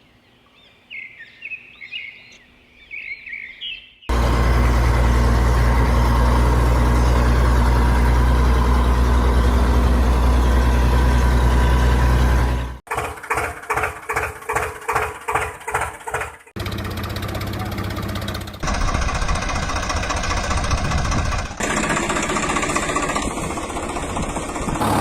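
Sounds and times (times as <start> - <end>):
birdsong: 0.0 - 7.4
diesel engine idling: 4.1 - 25.0.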